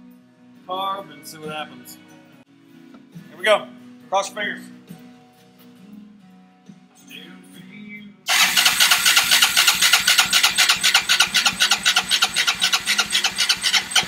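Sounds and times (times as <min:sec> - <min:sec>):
engine cranking on starter: 0:08.3 - 0:14.0.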